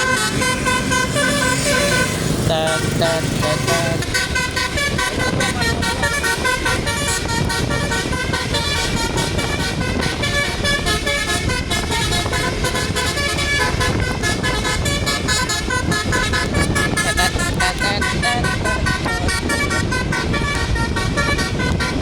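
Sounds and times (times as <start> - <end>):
bus engine: 0.0 - 22.0
bus horn playing a tune: 0.0 - 22.0
traffic noise: 0.0 - 22.0.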